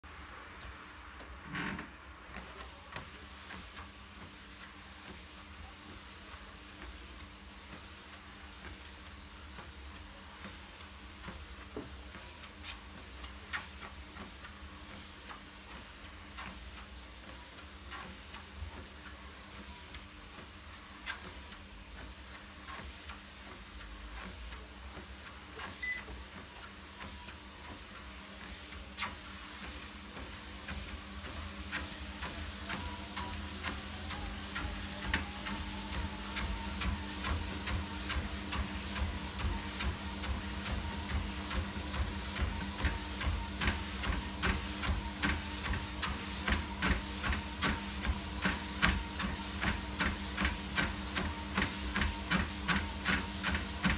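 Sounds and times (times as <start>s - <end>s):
exercise machine humming: 24.2s - 53.9s.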